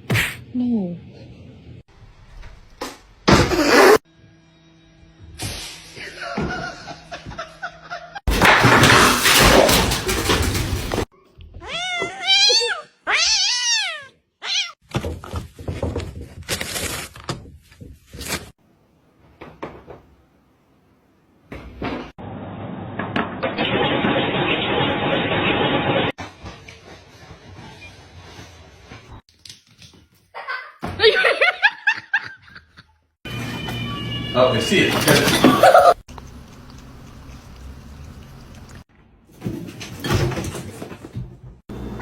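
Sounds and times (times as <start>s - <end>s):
bumps and thuds: 8.3s - 11.1s
clatter: 8.3s - 11.1s
cat meowing: 11.6s - 14.8s, 33.3s - 35.2s.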